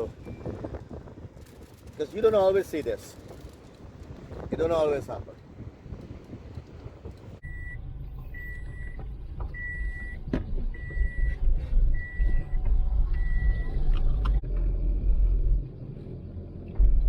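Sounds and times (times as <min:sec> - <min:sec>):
low rumble: 0:03.2 - 0:17.0
reversing alarm beeping: 0:07.4 - 0:13.8.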